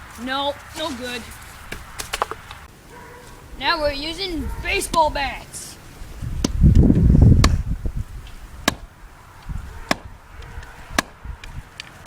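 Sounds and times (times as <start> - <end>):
bat knocking on tree trunk: 1.7 - 2.6.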